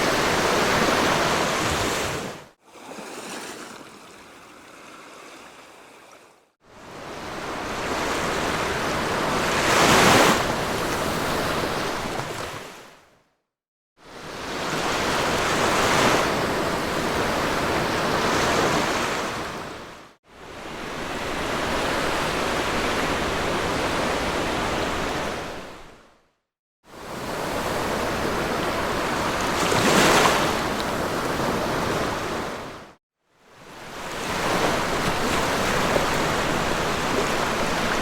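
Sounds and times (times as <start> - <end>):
sea waves washing onto beach: 33.9 - 38.0.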